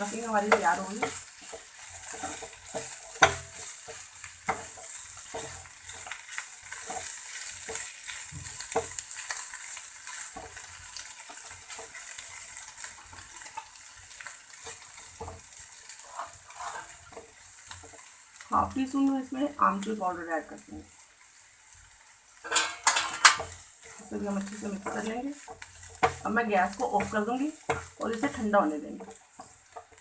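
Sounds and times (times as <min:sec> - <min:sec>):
utensil scraping and tapping pan: 0:00.0 - 0:12.8, 0:14.6 - 0:18.1, 0:22.4 - 0:30.0
food sizzling in a pan: 0:00.0 - 0:30.0.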